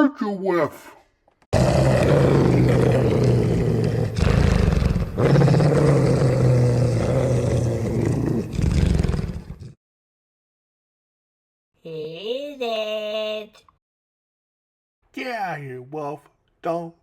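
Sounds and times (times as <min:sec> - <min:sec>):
wolf snarling growl: 0:01.5 - 0:09.8.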